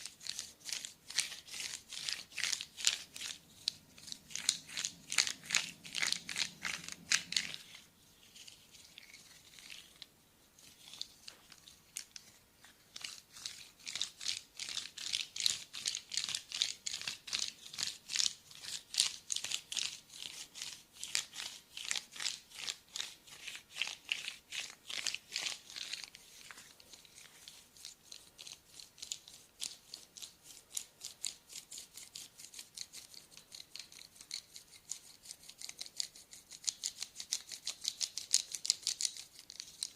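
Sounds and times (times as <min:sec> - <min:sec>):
scratching strokes on skin: 0:00.0 - 0:39.9.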